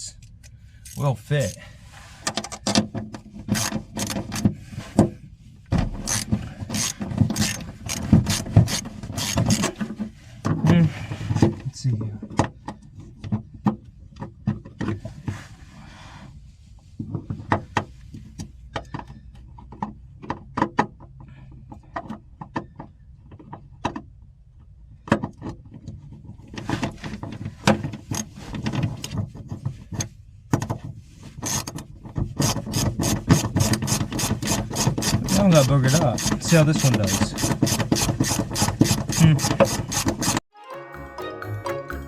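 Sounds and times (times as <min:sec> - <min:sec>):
ratchet wrench clicking: 0:06.0 - 0:09.7, 0:32.4 - 0:40.4.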